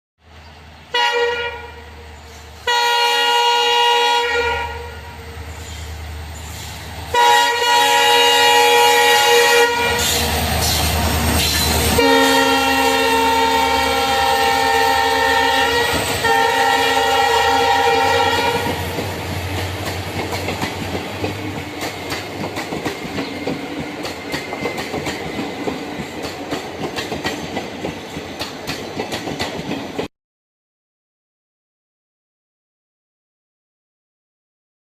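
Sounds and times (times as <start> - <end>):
train horn blasts: 0.9 - 2.0, 2.6 - 5.4, 7.1 - 10.3, 11.4 - 19.0
train wheels clattering: 18.5 - 30.1.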